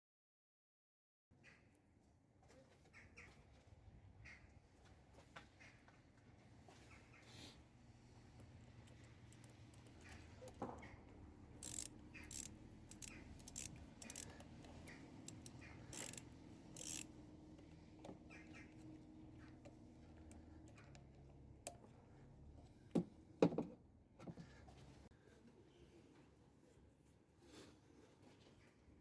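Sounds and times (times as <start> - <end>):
hand tools clicking and scraping: 8.9 - 18.1.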